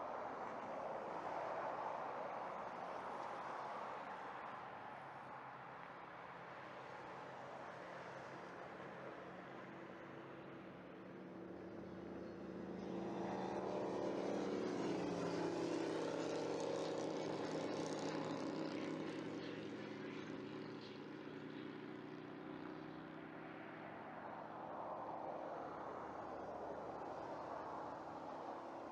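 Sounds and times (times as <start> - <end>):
propeller airplane passing by: 11.6 - 28.9.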